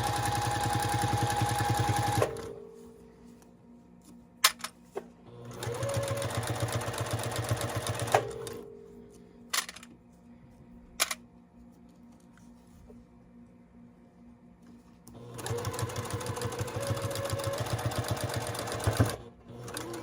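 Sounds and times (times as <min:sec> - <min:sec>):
sewing machine stitching: 0:00.0 - 0:02.5, 0:05.4 - 0:08.6, 0:15.2 - 0:20.0.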